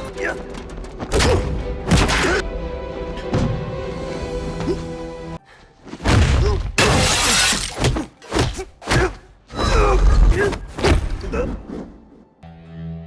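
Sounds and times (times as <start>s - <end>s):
grunts and shouts: 7.8s - 11.8s.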